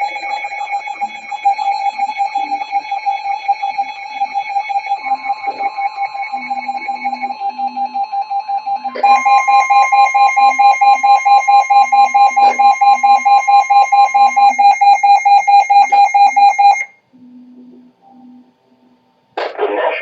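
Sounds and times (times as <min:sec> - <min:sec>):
emergency alert tone beeping: 0:00.0 - 0:17.0.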